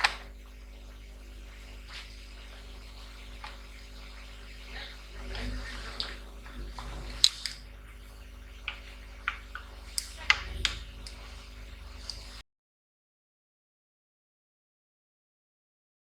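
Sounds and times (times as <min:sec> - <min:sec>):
electrical hum: 0:00.0 - 0:12.4
small clicks and taps: 0:08.5 - 0:12.4.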